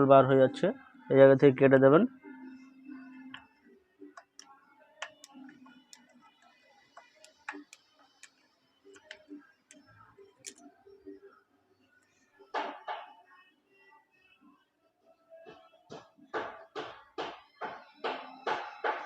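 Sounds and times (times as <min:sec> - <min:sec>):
hand tools clicking and tapping: 0:04.1 - 0:06.1, 0:07.0 - 0:09.8.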